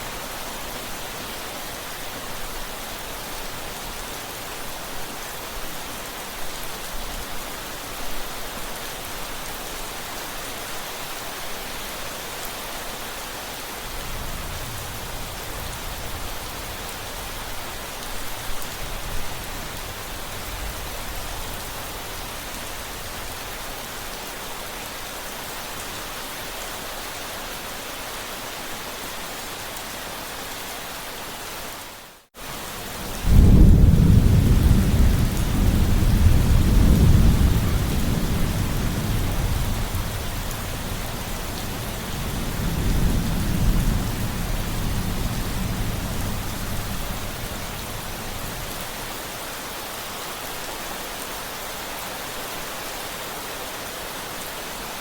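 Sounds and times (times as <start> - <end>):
steady rain: 0.0 - 55.0
deep rumble of thunder: 32.9 - 48.8.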